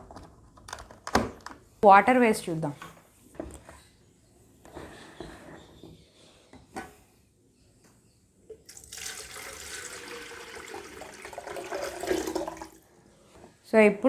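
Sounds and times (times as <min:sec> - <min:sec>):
water running into a kettle: 0:08.7 - 0:12.8.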